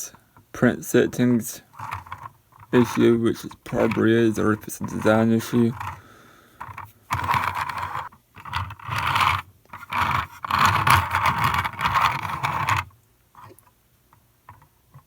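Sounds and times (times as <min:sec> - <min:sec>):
plastic model scraping: 0:00.9 - 0:06.0, 0:06.6 - 0:13.7.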